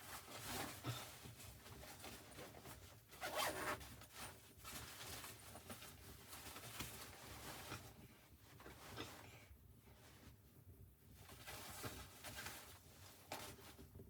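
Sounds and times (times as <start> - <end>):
zipper being pulled: 3.2 - 3.8.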